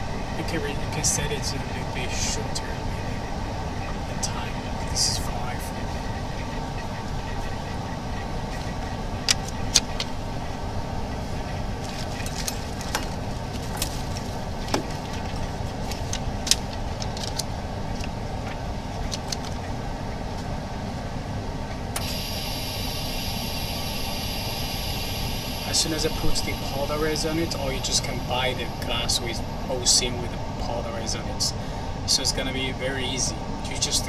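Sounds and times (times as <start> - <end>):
laminating machine hum: 0.0 - 34.0
steady hiss: 22.0 - 34.0.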